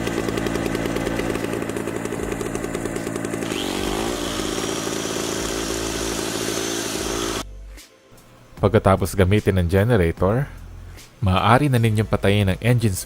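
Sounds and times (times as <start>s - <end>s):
generator engine running: 0.0s - 7.4s.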